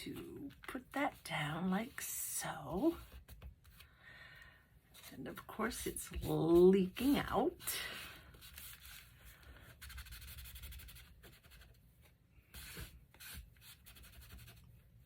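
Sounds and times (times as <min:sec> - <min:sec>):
paper rubbing and rustling: 0:08.1 - 0:11.8.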